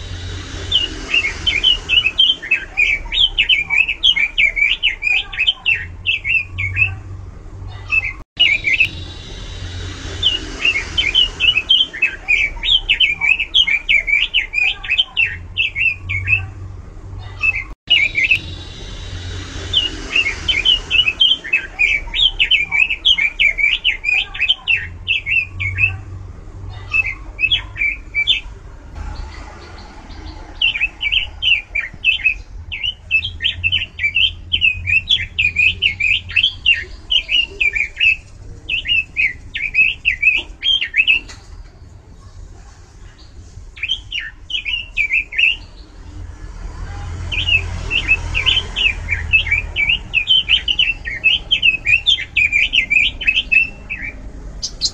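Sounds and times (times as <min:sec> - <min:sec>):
bird singing high chirps: 0:00.0 - 0:07.0, 0:07.7 - 0:16.6, 0:17.2 - 0:26.1, 0:26.7 - 0:41.6, 0:47.3 - 0:54.9
low hum: 0:00.0 - 0:37.5.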